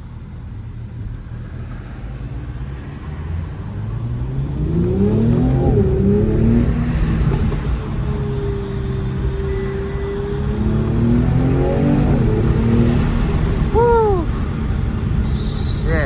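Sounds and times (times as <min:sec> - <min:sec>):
car engine accelerating: 0:00.0 - 0:16.0.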